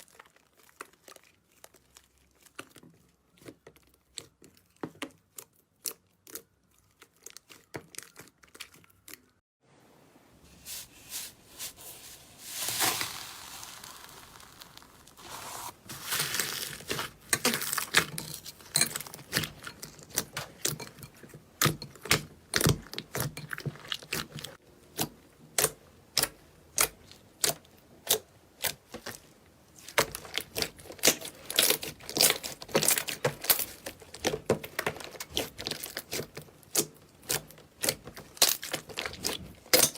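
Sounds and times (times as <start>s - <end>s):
slime popping and crackling: 12.6s - 18.3s.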